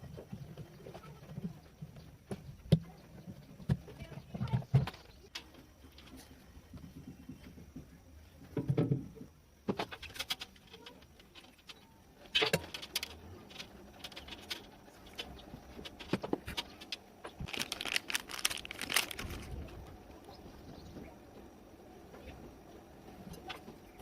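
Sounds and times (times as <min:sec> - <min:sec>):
small tools clicking and clinking: 0:12.4 - 0:19.5.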